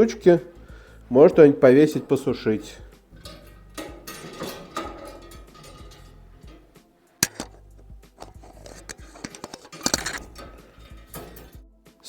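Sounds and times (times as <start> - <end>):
faint background music: 0.0 - 12.0
clicks and knocks around wood stove: 2.6 - 11.6.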